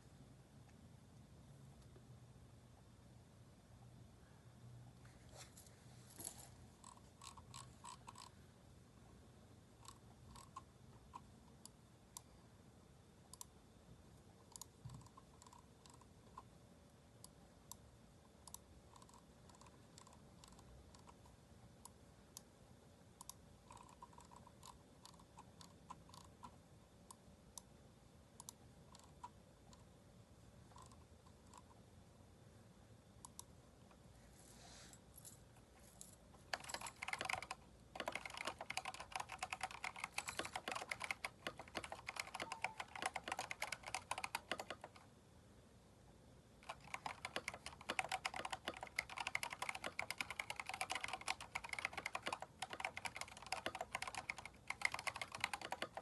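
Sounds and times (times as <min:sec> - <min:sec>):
mechanical keyboard keystrokes: 0:36.4 - 0:45.0, 0:46.6 - 0:56.0.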